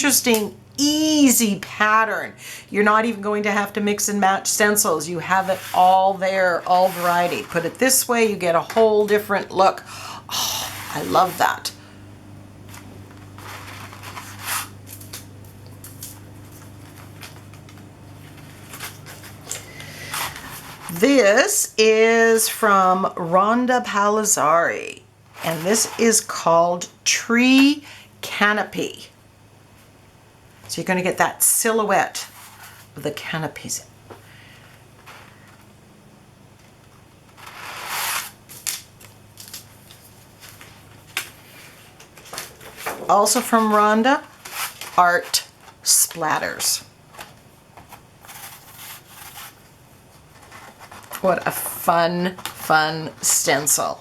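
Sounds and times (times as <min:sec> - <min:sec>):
steady low hum: 0:00.0 - 0:54.0
plastic sheets rustling: 0:04.4 - 0:09.6, 0:10.6 - 0:11.8, 0:12.6 - 0:21.2, 0:25.4 - 0:26.4, 0:36.7 - 0:54.0.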